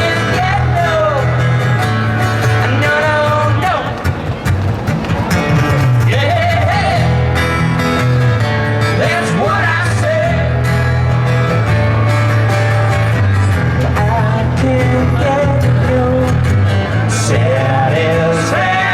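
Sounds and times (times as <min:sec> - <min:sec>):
bass line: 0:00.0 - 0:18.9
country band music: 0:00.0 - 0:18.9
guitar: 0:00.0 - 0:18.9
person singing: 0:13.8 - 0:18.9.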